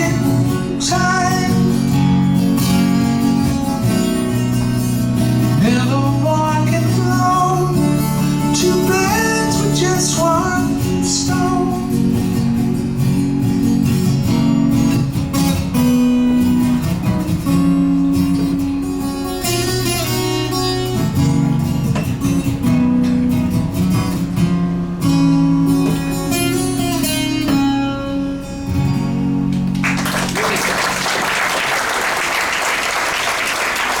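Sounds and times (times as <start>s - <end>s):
acoustic guitar: 0.0s - 34.0s
audience applause: 29.7s - 34.0s.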